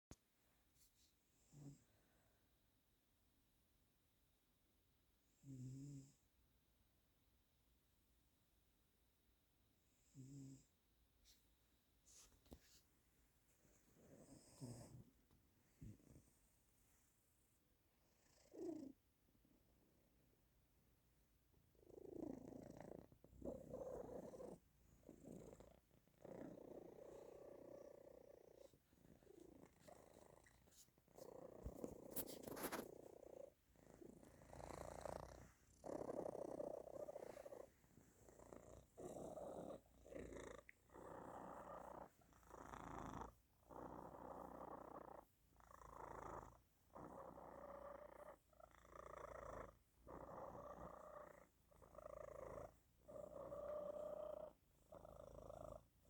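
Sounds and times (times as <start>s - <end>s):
cat snore-purring: 5.3s - 6.2s, 14.0s - 15.2s, 18.0s - 19.0s, 21.7s - 56.0s.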